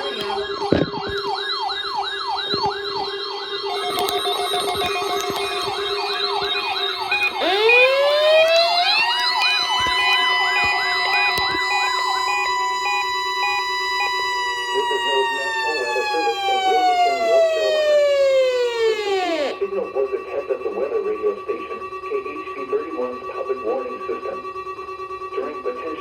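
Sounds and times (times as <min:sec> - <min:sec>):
siren winding up to high pitch: 0:00.0 - 0:19.6
steady low siren tone: 0:00.0 - 0:19.7
siren quick falling whoop: 0:07.2 - 0:19.6.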